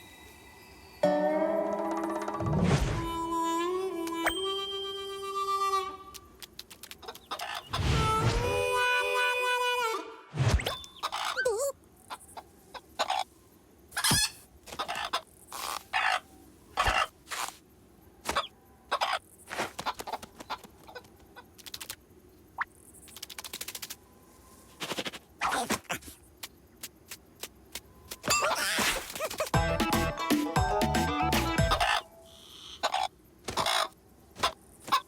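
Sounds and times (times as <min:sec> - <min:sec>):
squawk-like animal noises: 0:07.0 - 0:07.8, 0:10.8 - 0:13.3, 0:14.0 - 0:17.5, 0:31.7 - 0:35.0.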